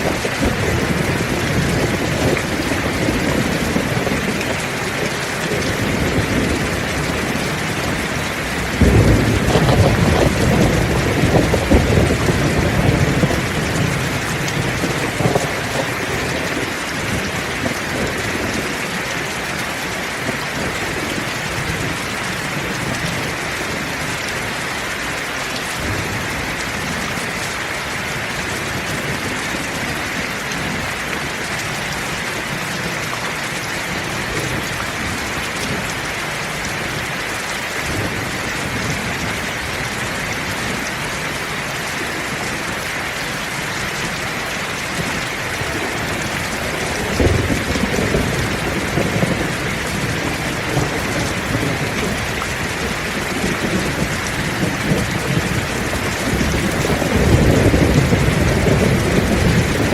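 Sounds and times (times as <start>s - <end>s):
low rumble of thunder: 0.0s - 19.2s, 44.6s - 59.9s
heavy rain falling: 0.0s - 59.9s.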